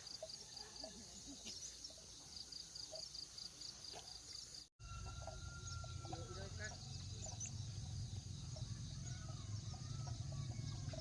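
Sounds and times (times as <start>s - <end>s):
insect chirping: 0.0s - 11.0s.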